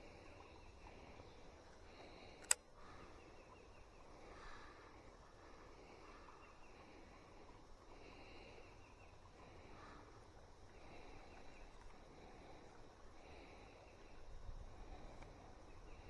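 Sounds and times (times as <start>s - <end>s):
sharp click: 2.4s - 2.6s.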